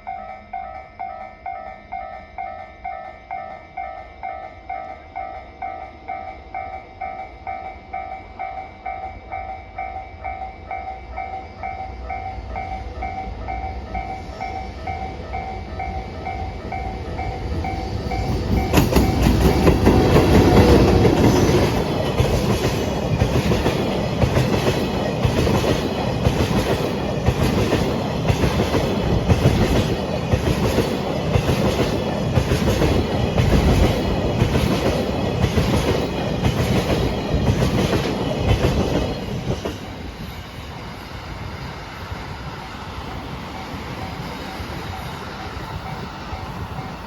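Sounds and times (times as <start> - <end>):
locomotive rushing past: 12.4 - 47.0.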